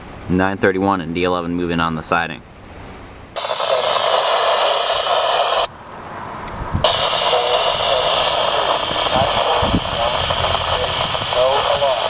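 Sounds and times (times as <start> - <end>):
radio scanner static hiss: 3.4 - 6.0, 6.8 - 12.0.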